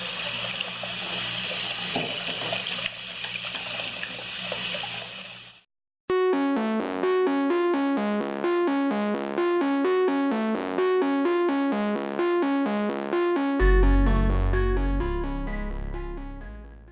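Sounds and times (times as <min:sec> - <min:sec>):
running tap water: 0:00.0 - 0:05.7
synthesizer arpeggio music: 0:06.1 - 0:16.9.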